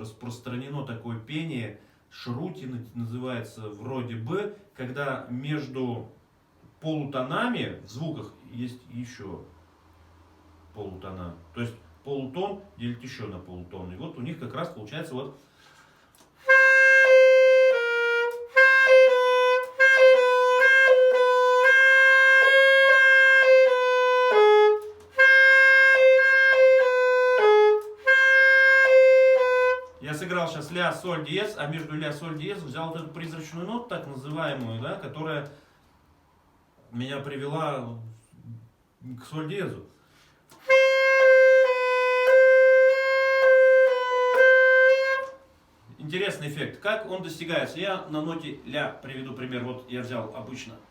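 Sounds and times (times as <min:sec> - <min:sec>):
solo saxophone sustained notes: 0:16.2 - 0:30.3, 0:40.5 - 0:45.6.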